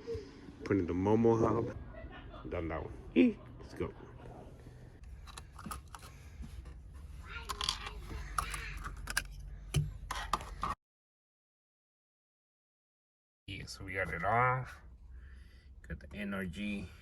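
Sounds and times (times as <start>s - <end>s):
hand tools clicking and rattling: 7.4s - 10.7s.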